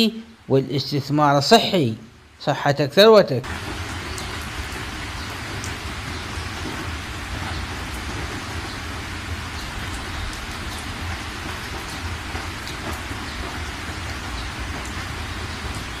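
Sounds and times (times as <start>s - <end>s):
steady rain hiss: 0.0s - 16.0s
raindrop ticks: 3.4s - 16.0s.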